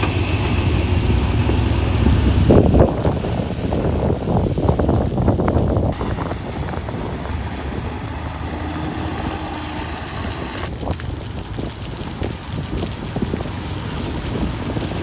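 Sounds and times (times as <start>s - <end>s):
heavy machinery rumbling: 0.0s - 4.2s, 5.7s - 10.7s
high hiss: 6.0s - 10.7s.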